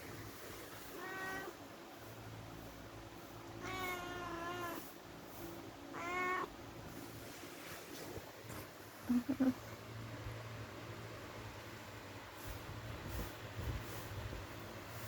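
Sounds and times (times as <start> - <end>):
cat meowing: 0.9 - 1.6, 3.6 - 4.8, 5.9 - 6.5.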